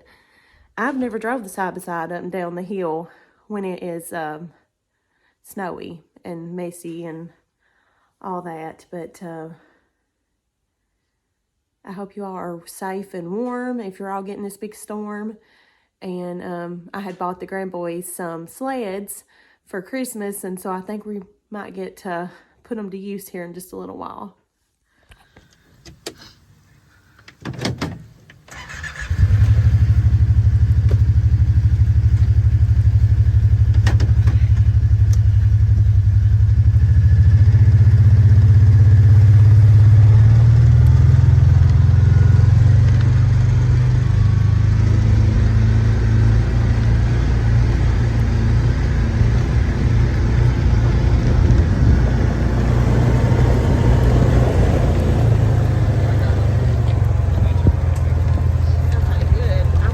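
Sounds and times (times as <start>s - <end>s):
vehicle engine starting and running: 27.2s - 59.9s.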